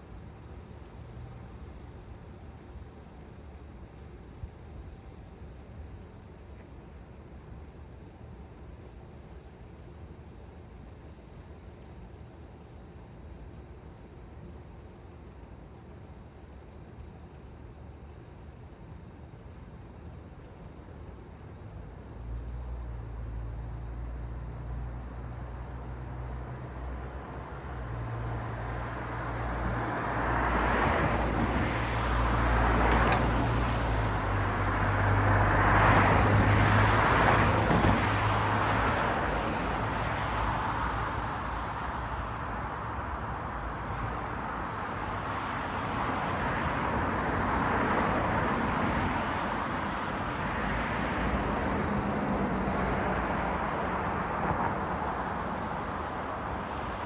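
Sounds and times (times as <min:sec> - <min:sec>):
low engine hum: 0:00.0 - 0:45.2
cars passing: 0:26.0 - 0:57.0.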